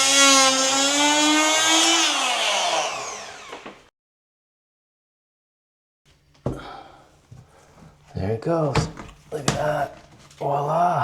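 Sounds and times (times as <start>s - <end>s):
multi-tool buzzing and winding down: 0.0s - 3.8s.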